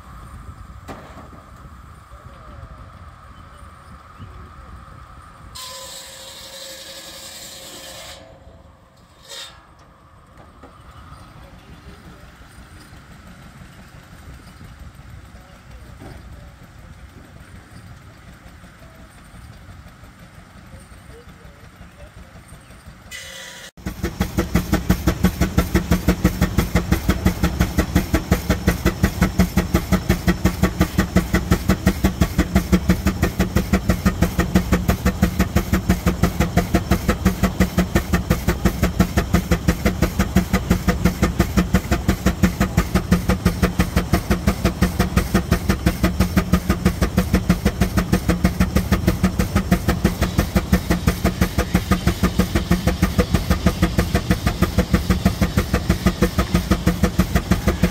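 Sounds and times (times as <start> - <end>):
steam engine exhaust beats: 0.0 - 57.9.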